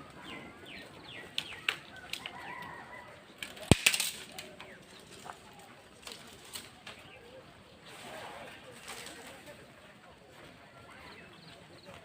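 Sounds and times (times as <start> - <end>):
small birds chirping: 0.0 - 9.7, 10.7 - 12.0.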